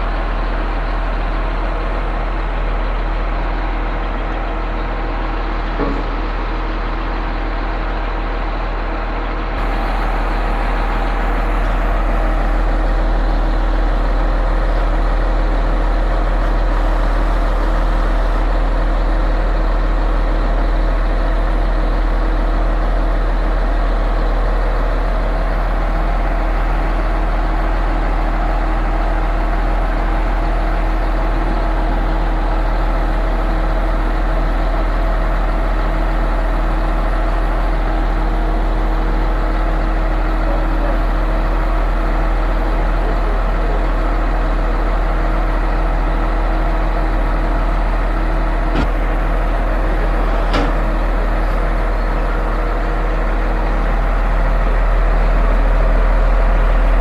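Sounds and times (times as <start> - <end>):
diesel engine rumbling: 0.0 - 57.0
steady hum: 8.8 - 20.3.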